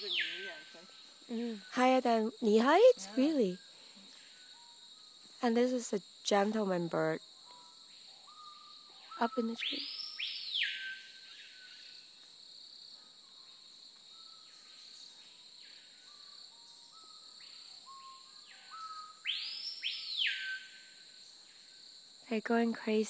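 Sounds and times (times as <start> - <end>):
bird whistled calls: 0.0 - 0.9, 7.5 - 11.8, 16.9 - 20.9
high-pitched insect drone: 0.0 - 23.0.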